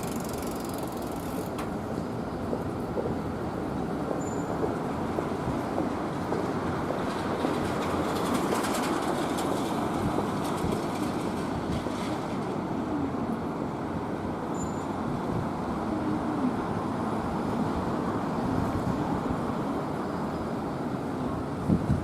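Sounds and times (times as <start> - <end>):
faint wheel clicking: 0.0 - 1.7
street traffic noise: 0.0 - 22.0
tram running over rails: 0.0 - 22.0.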